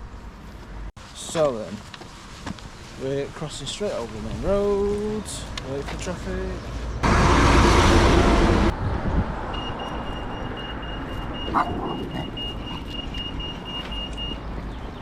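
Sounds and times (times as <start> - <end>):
road traffic: 0.0 - 15.0
vehicle passing: 6.8 - 13.8.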